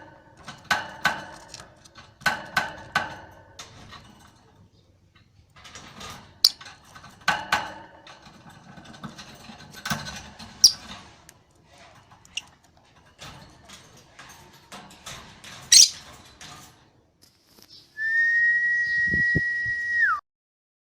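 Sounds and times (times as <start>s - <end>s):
lovebird chirping and clicking: 10.6s - 10.8s, 15.7s - 16.0s.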